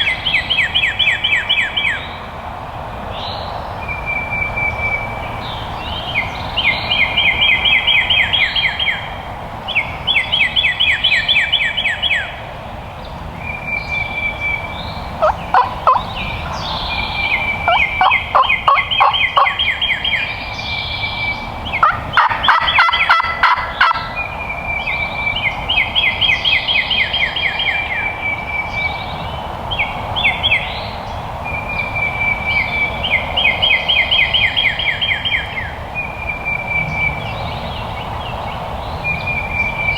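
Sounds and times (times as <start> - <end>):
turkeys gobbling: 15.0 - 19.8, 21.8 - 24.3.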